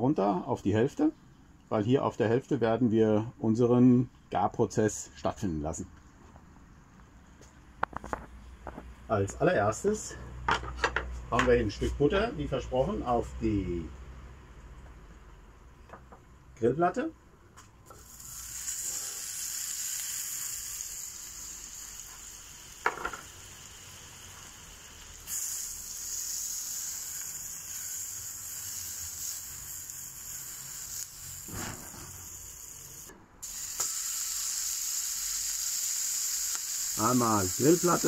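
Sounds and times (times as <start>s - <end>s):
butter sizzling on a griddle: 17.9s - 38.0s.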